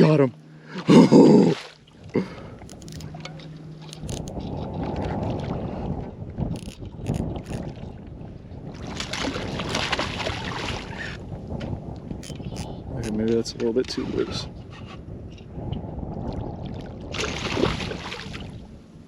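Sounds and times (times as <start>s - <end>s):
faint steady hum: 0.0s - 4.4s
water noise: 0.0s - 19.0s
wind rumbling on microphone: 0.9s - 19.0s.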